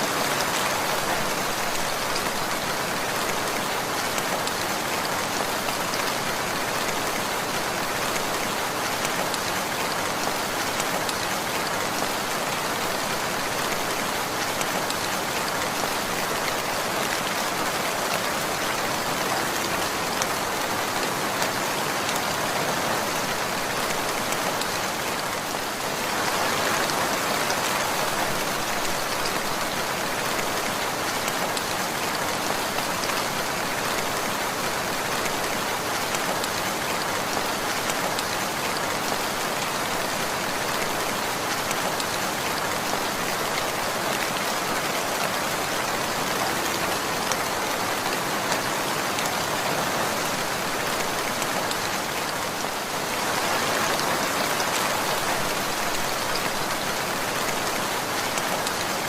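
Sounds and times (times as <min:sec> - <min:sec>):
steady rainfall: 0:00.0 - 0:59.0.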